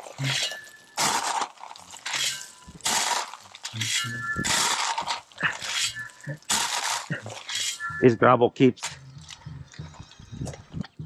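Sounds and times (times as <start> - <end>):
gravel pouring off shovel: 0.0 - 7.8.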